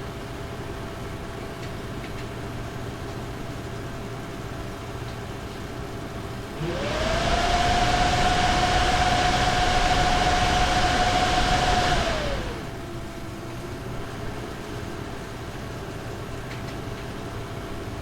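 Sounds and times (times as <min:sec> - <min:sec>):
graphics card fans whining: 0:06.6 - 0:13.1.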